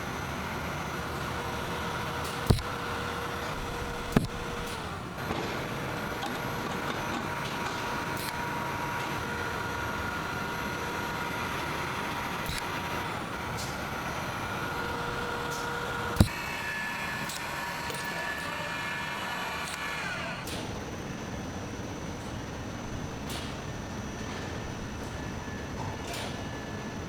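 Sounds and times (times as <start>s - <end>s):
factory machinery whining: 0.0s - 27.0s
sharp click: 2.2s - 2.7s, 4.1s - 5.5s.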